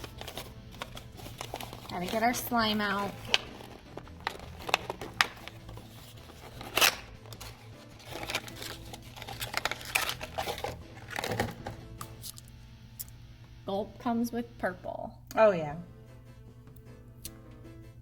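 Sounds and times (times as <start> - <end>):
plastic packaging crinkling: 0.0 - 11.6.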